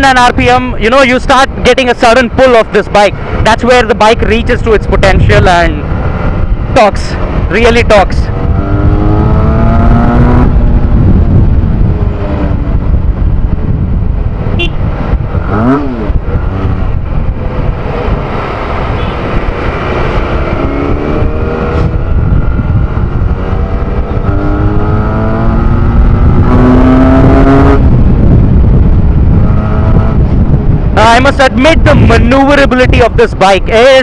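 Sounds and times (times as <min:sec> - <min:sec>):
wind rumble on microphone: 0:00.0 - 0:34.0
motorcycle engine accelerating: 0:05.7 - 0:31.2.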